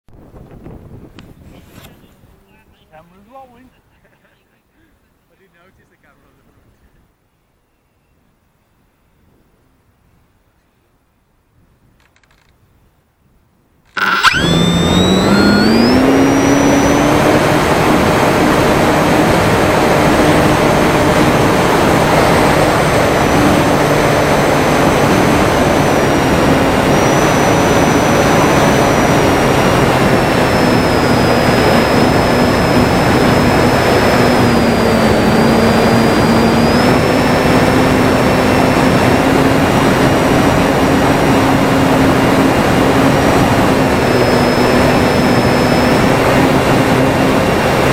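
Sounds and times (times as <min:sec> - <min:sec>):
model plane motor and propeller: 0:13.8 - 0:47.9
loud rush of noise: 0:14.0 - 0:47.9.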